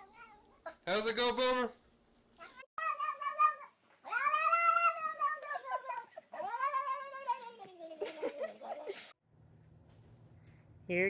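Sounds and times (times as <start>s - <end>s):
cat meowing: 2.8s - 7.4s.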